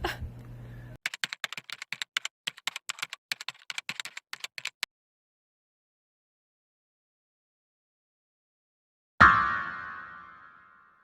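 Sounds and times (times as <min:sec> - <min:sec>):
computer keyboard typing: 0:01.0 - 0:04.9.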